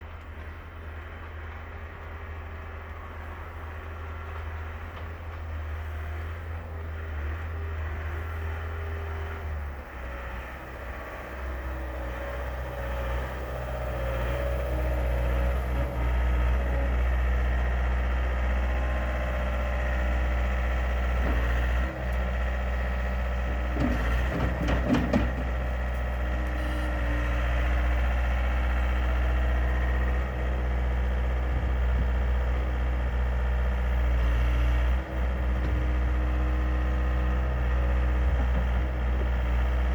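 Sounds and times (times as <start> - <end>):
diesel engine running: 0.0 - 39.9
clatter of knocks: 23.7 - 25.7.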